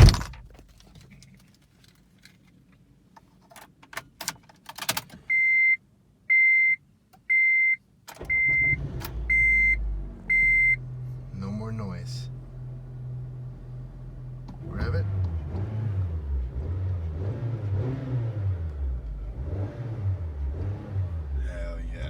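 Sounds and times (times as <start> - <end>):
car warning chime beeping: 5.3 - 10.9
car engine starting and idling: 8.0 - 22.0.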